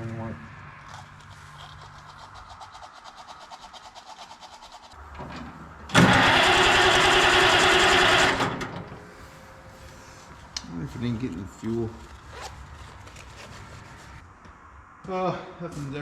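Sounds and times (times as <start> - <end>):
engine cranked by starter: 5.0 - 9.2.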